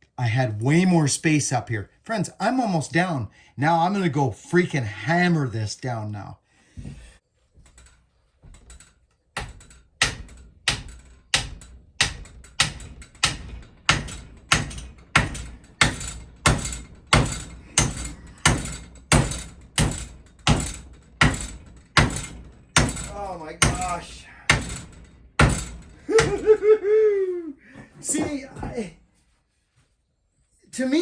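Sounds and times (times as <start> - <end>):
hammer striking wedge: 9.4 - 26.5.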